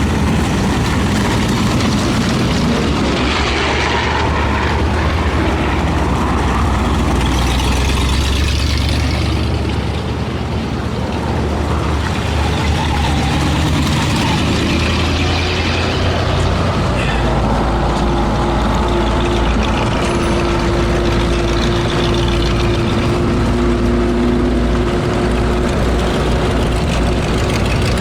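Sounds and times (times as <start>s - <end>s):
steel tracks clattering on gravel: 0.0s - 9.2s
engines rumbling: 0.0s - 28.0s.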